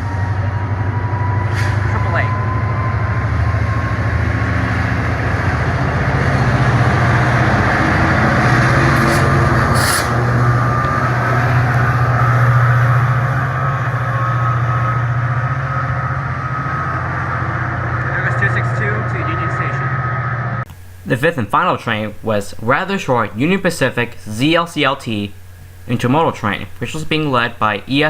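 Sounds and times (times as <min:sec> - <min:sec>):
rail and wheel noise: 0:00.0 - 0:20.8
diesel locomotive engine rumble: 0:00.0 - 0:28.0.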